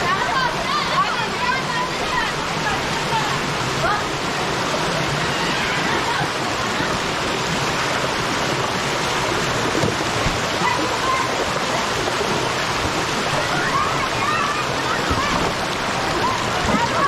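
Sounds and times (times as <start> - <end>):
water rushing over stones: 0.0 - 17.0.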